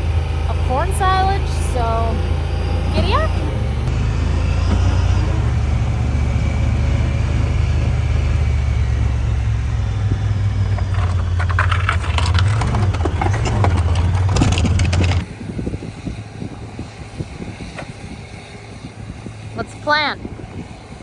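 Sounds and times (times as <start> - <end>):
rattling: 0.0 - 15.8
vehicle engine humming: 0.0 - 21.0
wind noise: 0.0 - 21.0.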